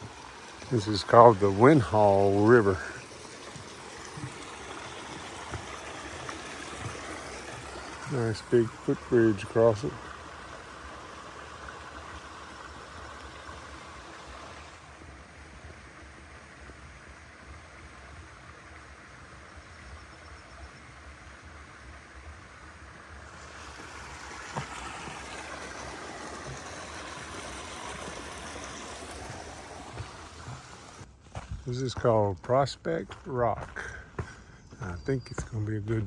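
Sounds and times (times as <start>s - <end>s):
river water rushing: 0.0s - 18.4s, 22.4s - 31.1s.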